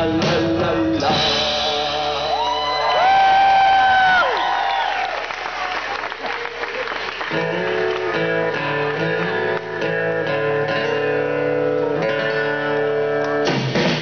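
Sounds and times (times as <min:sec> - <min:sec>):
guitars strumming chords: 0:00.0 - 0:02.6, 0:07.3 - 0:14.0.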